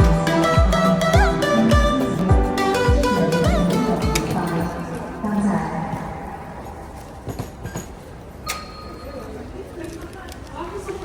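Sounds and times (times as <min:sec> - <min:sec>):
deep steady beat: 0:00.0 - 0:04.5
plucked melody notes: 0:00.0 - 0:04.9.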